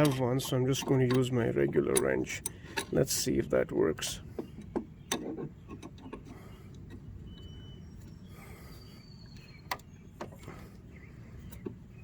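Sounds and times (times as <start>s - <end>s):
wrench clicking on metal bolt: 0.0s - 3.0s.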